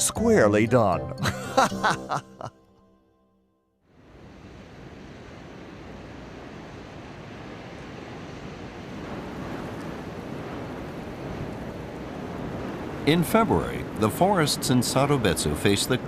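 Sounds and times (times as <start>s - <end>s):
wind blowing through forest: 3.9s - 16.0s.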